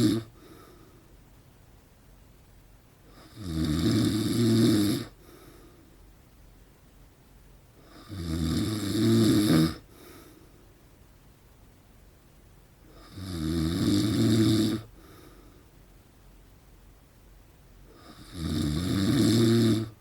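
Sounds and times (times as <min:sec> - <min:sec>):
man snoring loudly: 0:00.0 - 0:00.3, 0:03.2 - 0:05.2, 0:07.9 - 0:09.8, 0:13.0 - 0:14.9, 0:18.0 - 0:20.0
quiet breathing: 0:00.0 - 0:01.5, 0:03.0 - 0:06.3, 0:07.7 - 0:11.0, 0:12.8 - 0:13.4, 0:14.2 - 0:16.6, 0:17.8 - 0:20.0.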